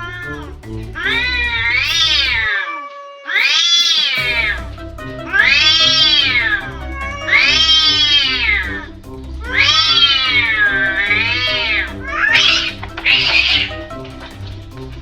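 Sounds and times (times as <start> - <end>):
background music: 0.0 - 2.5, 4.2 - 15.0
cat yowling: 1.2 - 4.6, 5.3 - 8.6.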